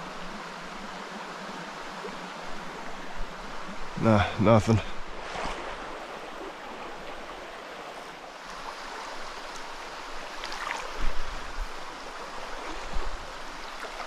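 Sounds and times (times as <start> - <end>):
stream splashing over stone: 5.2 - 14.0.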